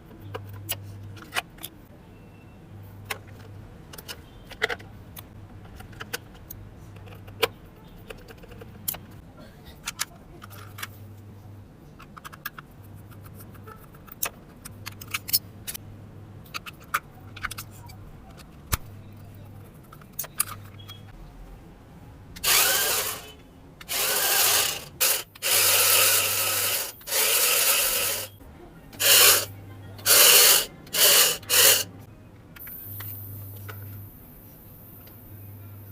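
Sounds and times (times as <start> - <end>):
electric motor whirring: 22.4 - 28.4, 29.0 - 31.9.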